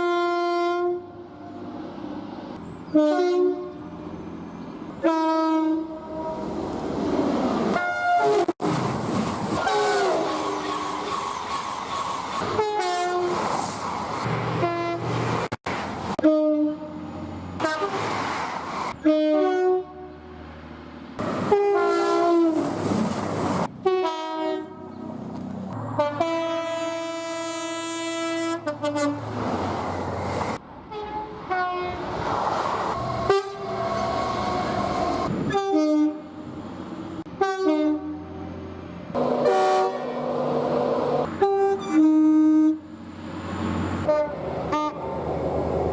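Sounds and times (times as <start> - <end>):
train two-tone horns: 0.0 - 1.5, 2.9 - 3.9, 5.0 - 6.6, 7.7 - 8.5, 9.6 - 11.2, 12.4 - 13.4, 14.6 - 15.2, 16.2 - 18.2, 19.0 - 20.3, 21.2 - 22.7, 23.8 - 25.0, 25.8 - 29.4, 30.9 - 32.1, 33.0 - 36.5, 37.3 - 38.5, 39.2 - 43.0, 44.0 - 45.2
trains passing rumble: 1.1 - 45.9.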